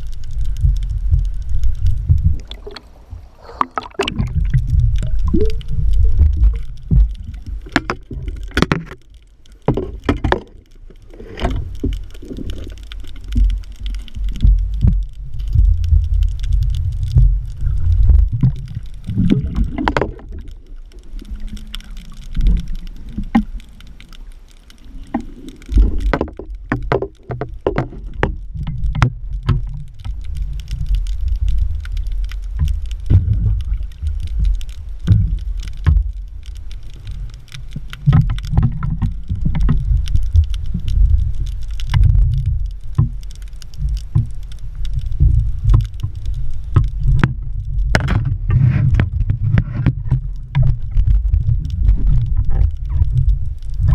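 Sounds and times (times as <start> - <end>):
water sloshing against microphone: 0.0 - 15.0, 16.3 - 53.9
clicks and knocks: 6.2 - 9.0, 9.6 - 10.7, 25.1 - 30.1.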